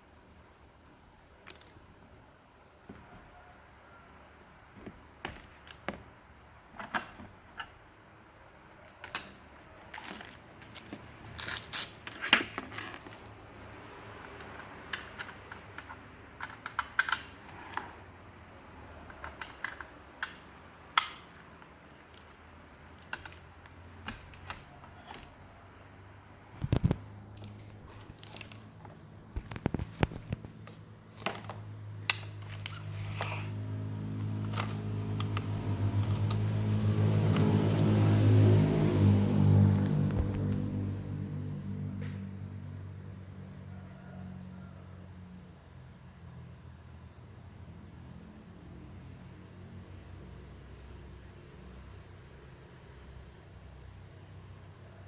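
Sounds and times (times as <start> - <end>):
small hard parts clicking: 14.4 - 18.0.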